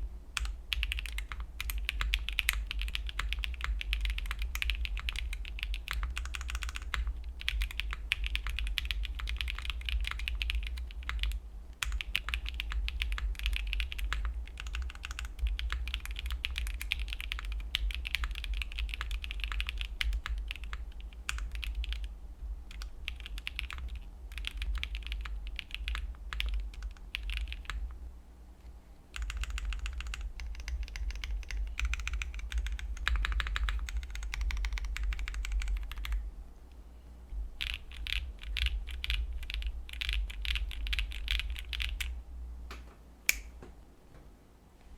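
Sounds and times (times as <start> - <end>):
mechanical keyboard typing: 0.4 - 22.1, 22.7 - 27.9, 29.2 - 36.2, 37.6 - 42.2.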